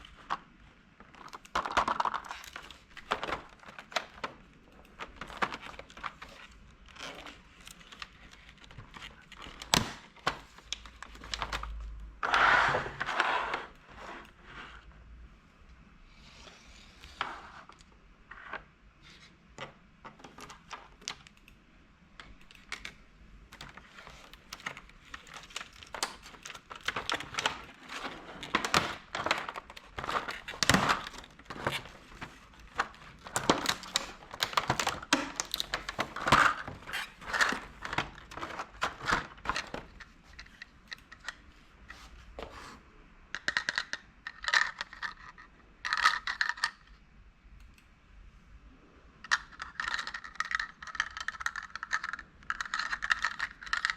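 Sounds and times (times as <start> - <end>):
plastic crinkling: 1.0 - 12.0, 22.4 - 41.5, 49.3 - 53.9
plastic pieces clicking and rattling: 1.1 - 11.8, 22.2 - 41.5, 43.4 - 47.0, 49.2 - 53.9.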